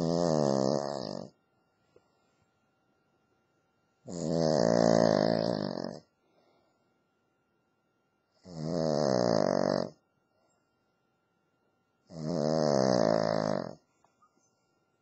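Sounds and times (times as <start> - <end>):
dog snoring: 0.0 - 1.4, 4.0 - 6.1, 8.4 - 10.0, 12.0 - 13.9.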